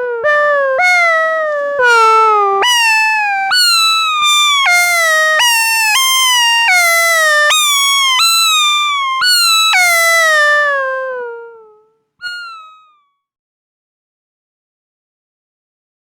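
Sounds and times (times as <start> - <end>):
synthesizer meow-like gliding tones: 1.9 - 10.7, 12.2 - 12.8.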